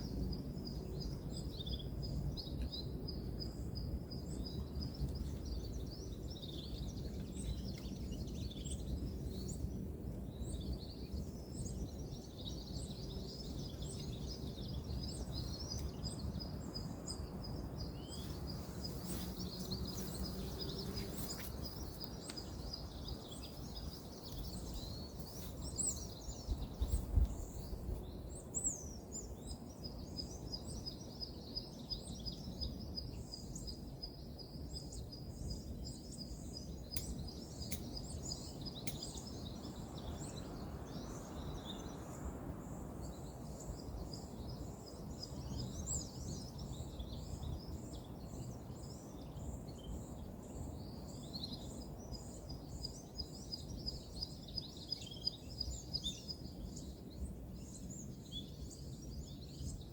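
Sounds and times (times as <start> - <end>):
birds chirping: 0.0 - 57.0
faint clicks: 36.9 - 38.0.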